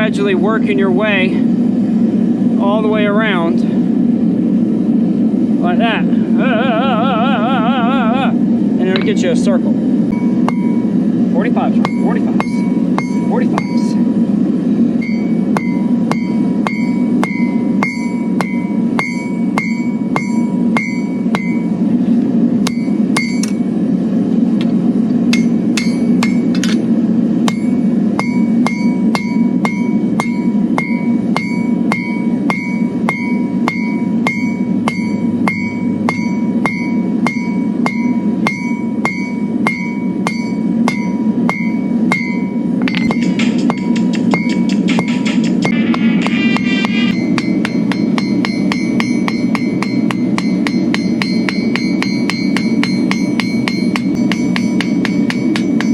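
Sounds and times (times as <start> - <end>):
steady low drone: 0.0 - 55.9
hammer striking steel on anvil: 10.1 - 11.0, 11.7 - 14.0, 15.0 - 21.8, 22.6 - 23.7, 25.3 - 55.9.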